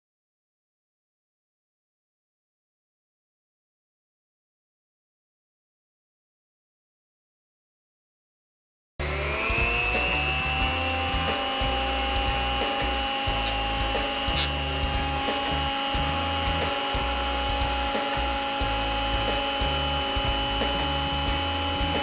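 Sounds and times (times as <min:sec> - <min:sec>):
electric motor whine: 0:09.0 - 0:22.0.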